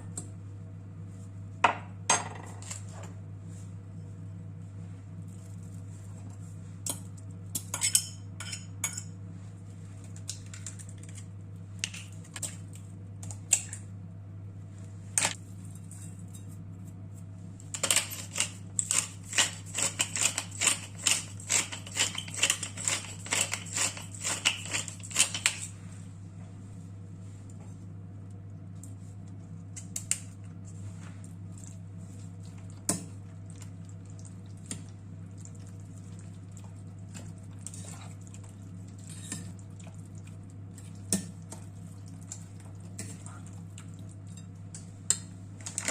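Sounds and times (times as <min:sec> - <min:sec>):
steady low hum: 0:00.0 - 0:45.9
utensils clinking against dishes: 0:06.9 - 0:09.2.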